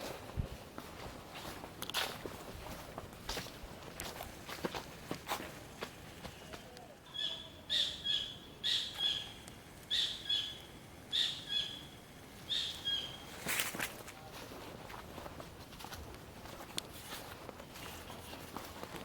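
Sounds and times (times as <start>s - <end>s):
bird calling high notes: 7.0s - 13.3s
rustling: 13.3s - 19.0s.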